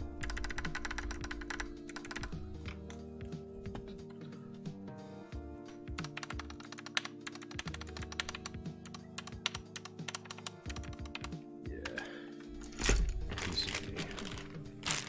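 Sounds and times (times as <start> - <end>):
keyboard rattle: 0.0 - 4.4, 5.8 - 11.4, 12.4 - 15.0
background music: 0.0 - 15.0
keyboard keys clacking: 0.0 - 15.0.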